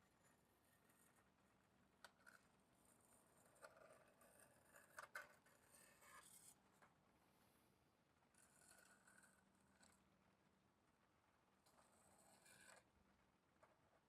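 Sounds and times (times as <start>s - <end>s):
scratchy metal scraping: 2.2s - 6.6s, 11.6s - 12.8s.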